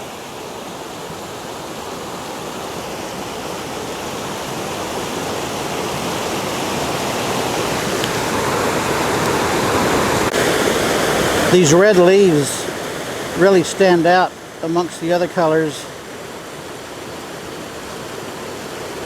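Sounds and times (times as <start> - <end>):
creek water rushing over boulders: 0.0 - 19.0.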